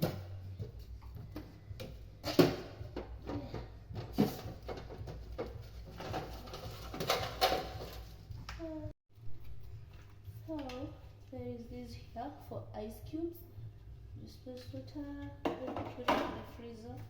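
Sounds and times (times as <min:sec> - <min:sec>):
plastic accessories knocking: 0:01.3 - 0:08.1.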